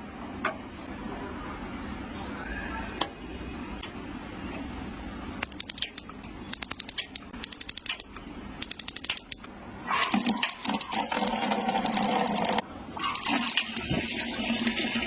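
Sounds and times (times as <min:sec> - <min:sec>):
sharp mechanical clicking: 0:05.4 - 0:14.0.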